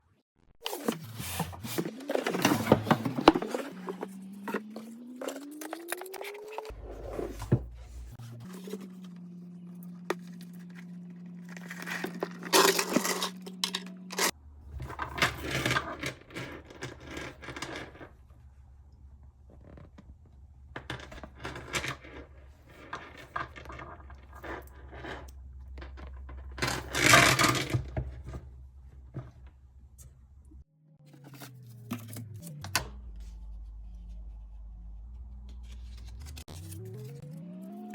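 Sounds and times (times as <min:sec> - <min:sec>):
low hum: 0:01.2 - 0:15.0, 0:28.4 - 0:37.9.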